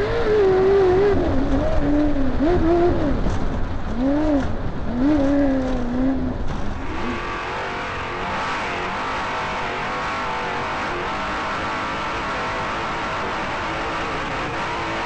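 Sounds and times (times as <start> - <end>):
race car engine revving: 0.0 - 15.0
wind and road noise: 0.0 - 15.0.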